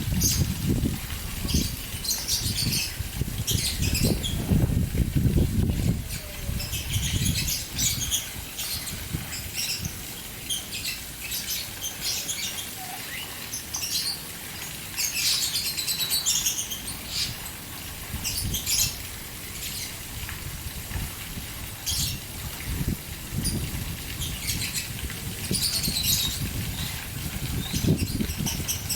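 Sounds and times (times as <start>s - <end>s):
fountain splashing: 0.0s - 28.9s
birds chirping: 1.4s - 4.7s, 5.9s - 17.6s, 23.4s - 28.9s.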